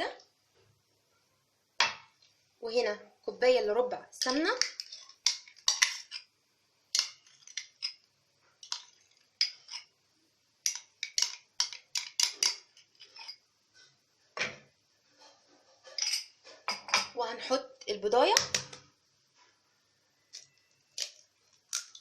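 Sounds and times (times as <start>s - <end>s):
spoon clinking and scraping cup: 4.6s - 6.3s, 7.0s - 8.0s, 8.6s - 9.9s, 10.7s - 13.4s.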